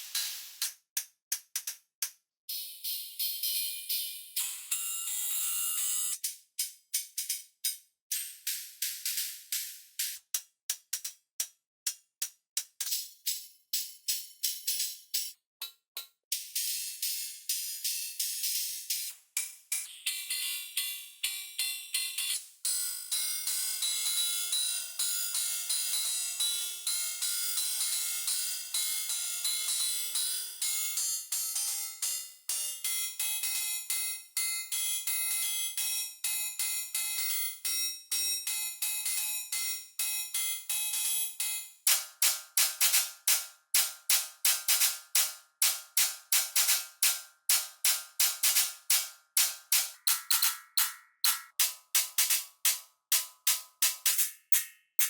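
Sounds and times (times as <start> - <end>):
electronic drum machine beat: 46.4 - 53.2.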